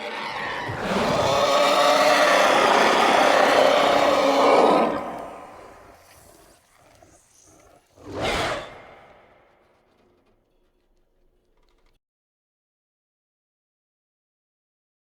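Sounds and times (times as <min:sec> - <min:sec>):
monster roar: 0:00.0 - 0:09.5.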